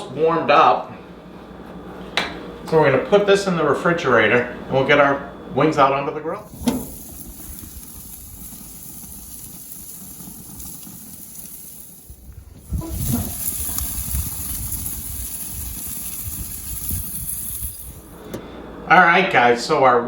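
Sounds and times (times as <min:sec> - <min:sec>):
steady hissing: 0:06.3 - 0:18.9.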